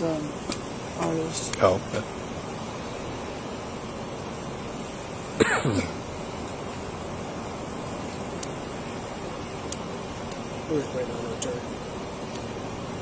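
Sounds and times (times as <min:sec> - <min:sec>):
steady background hiss: 0:00.0 - 0:13.0.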